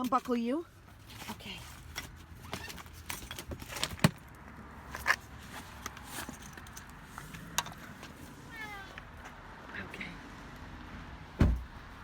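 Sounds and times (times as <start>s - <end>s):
cat carrier knocks and rustling: 11.4s - 11.7s.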